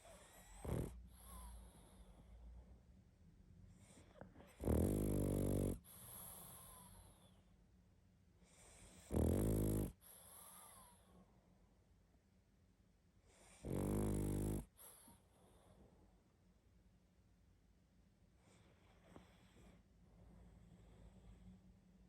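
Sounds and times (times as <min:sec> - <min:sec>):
dog snoring: 0:00.0 - 0:02.4, 0:03.7 - 0:07.4, 0:08.4 - 0:11.1, 0:13.3 - 0:15.2, 0:18.4 - 0:19.8.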